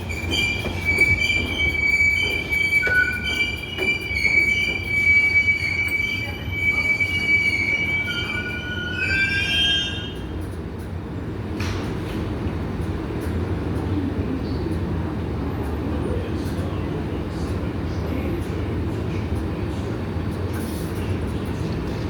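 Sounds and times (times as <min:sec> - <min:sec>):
train wheels squealing on rails: 0:00.0 - 0:11.0
low rumble of train: 0:00.0 - 0:22.0.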